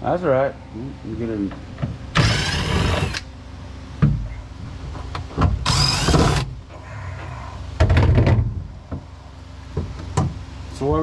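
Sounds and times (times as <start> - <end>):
cordless drill whining: 2.2 - 3.3, 5.6 - 6.5.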